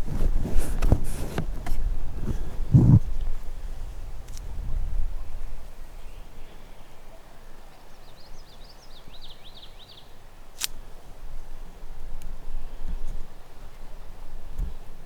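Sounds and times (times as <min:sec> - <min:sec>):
songbird singing: 0:04.6 - 0:10.5.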